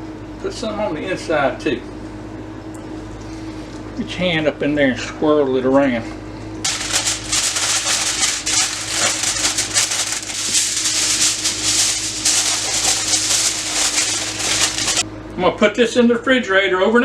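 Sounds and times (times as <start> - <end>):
wet rustling and squishing: 6.7 - 15.0.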